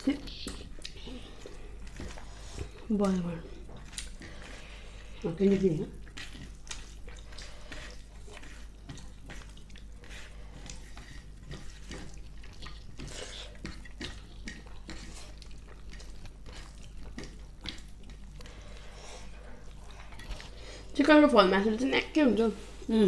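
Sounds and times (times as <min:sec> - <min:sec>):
wet chewing and lip smacks: 0:00.2 - 0:04.5, 0:06.0 - 0:20.6.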